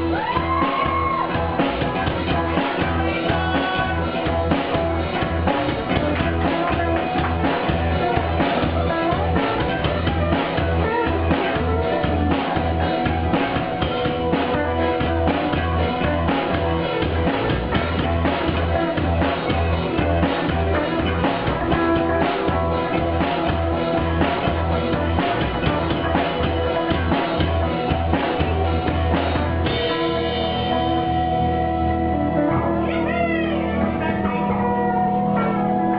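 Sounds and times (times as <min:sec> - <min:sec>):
drum kit playing: 0:00.0 - 0:35.9
rock song with singing and guitar: 0:00.0 - 0:35.9.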